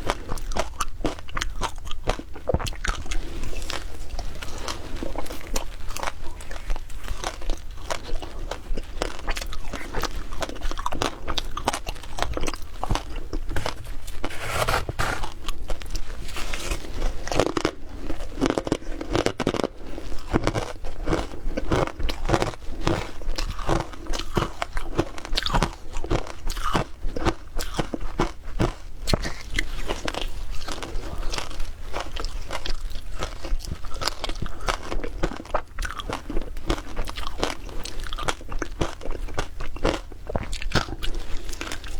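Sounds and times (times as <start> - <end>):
shaved ice crunching: 13.6 - 15.4.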